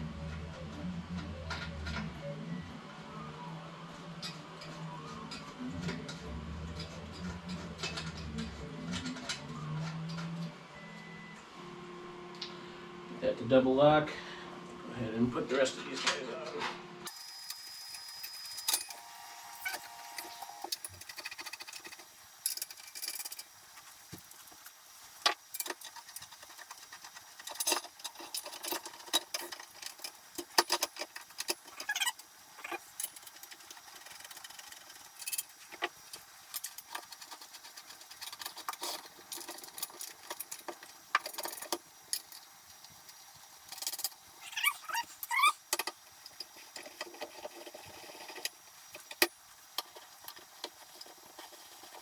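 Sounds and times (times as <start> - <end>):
short squeaks: 31.8 - 32.8, 44.4 - 45.6.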